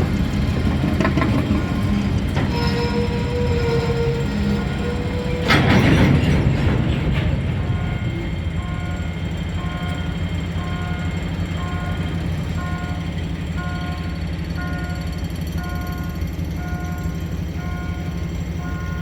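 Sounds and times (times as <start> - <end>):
diesel locomotive engine droning: 0.0 - 19.0
level-crossing warning beeps: 7.5 - 19.0.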